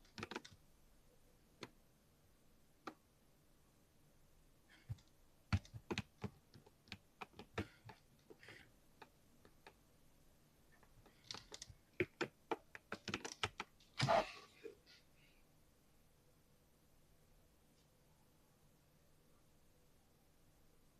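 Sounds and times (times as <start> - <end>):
mechanical keyboard typing: 0.0 - 0.6, 4.9 - 8.0, 11.1 - 13.7.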